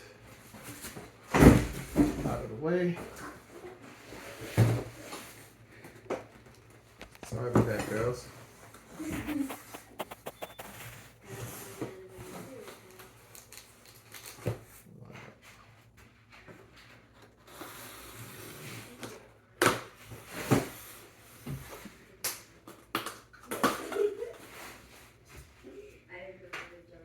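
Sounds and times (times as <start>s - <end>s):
cardboard box rustling: 9.2s - 11.2s.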